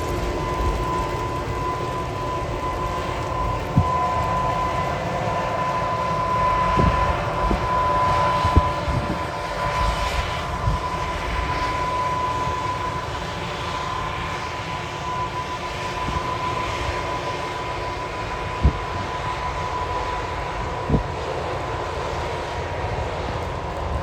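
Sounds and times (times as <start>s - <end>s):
high whine: 0.0s - 21.6s.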